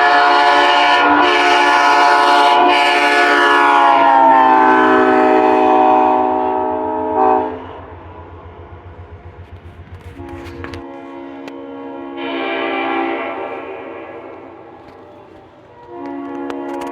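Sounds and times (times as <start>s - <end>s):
locomotive air horn: 0.0s - 7.9s, 9.8s - 16.9s
train rhythmic pulsing: 0.0s - 16.9s.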